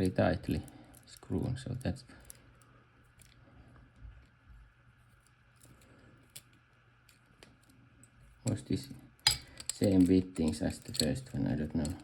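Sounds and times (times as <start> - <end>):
padlock and tools clicking: 9.2 - 12.0.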